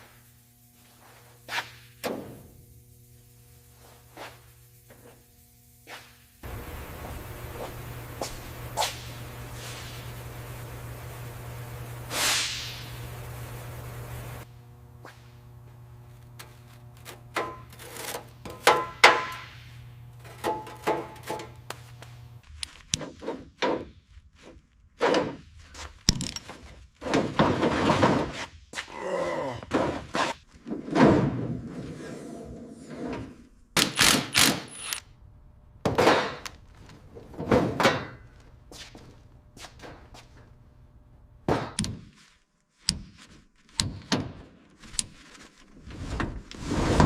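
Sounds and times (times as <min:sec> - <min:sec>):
low steady hum: 0:06.4 - 0:22.5, 0:34.7 - 0:41.5
knocks and clanks on car body: 0:18.5 - 0:19.4.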